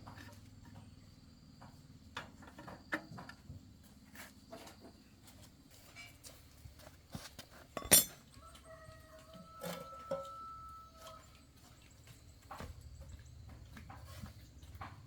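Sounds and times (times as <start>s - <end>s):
sharp metal clank: 7.8s - 8.2s
rooster crowing: 8.3s - 11.4s.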